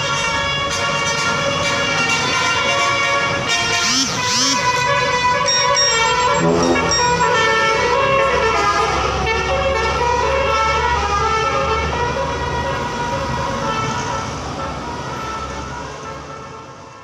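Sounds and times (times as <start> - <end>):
musical air horn tune: 5.4 - 8.8.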